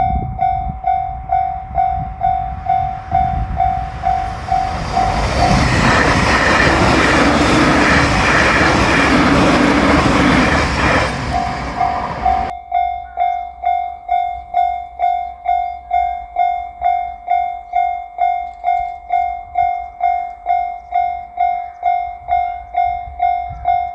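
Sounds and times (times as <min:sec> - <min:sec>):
train wheel and rail noise: 0:00.0 - 0:13.2
level crossing warning bell: 0:00.0 - 0:23.9.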